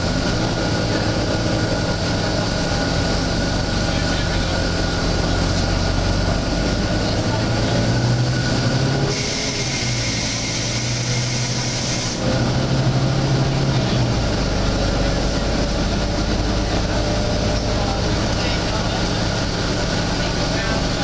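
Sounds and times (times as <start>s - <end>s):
bus diesel engine droning: 0.0s - 21.0s
hiss: 9.1s - 12.2s.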